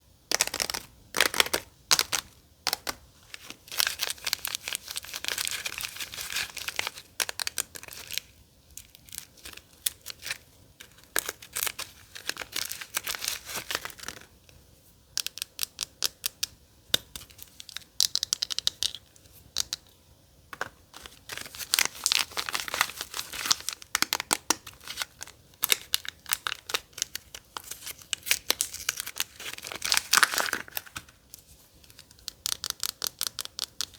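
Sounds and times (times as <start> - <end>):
packaging crinkling and tearing: 0.3 - 14.3, 21.0 - 31.3.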